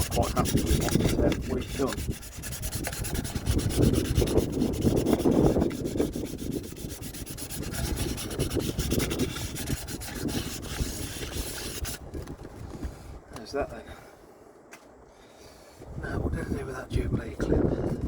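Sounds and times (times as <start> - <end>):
sandpaper rubbing: 0.0 - 12.0.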